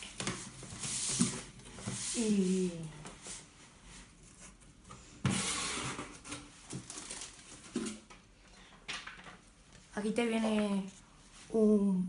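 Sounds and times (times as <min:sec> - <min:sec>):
packaging rustling and crinkling: 0:05.4 - 0:08.2.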